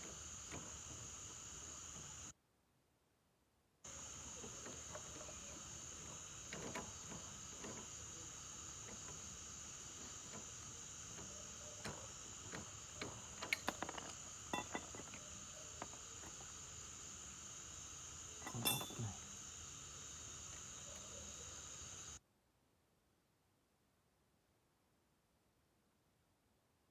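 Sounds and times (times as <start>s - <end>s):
crickets chirring: 0.0s - 2.3s, 3.9s - 22.2s.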